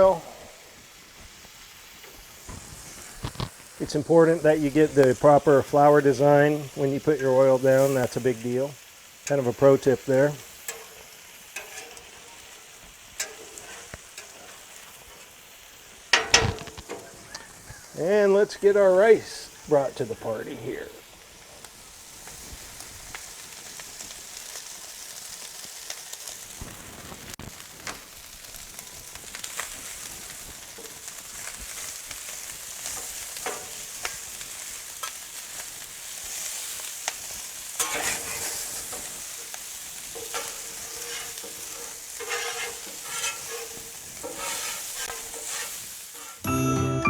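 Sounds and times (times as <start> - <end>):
rice sizzling on a griddle: 0.0 - 46.5
spatula scraping and tapping griddle: 1.4 - 18.8, 27.8 - 46.4.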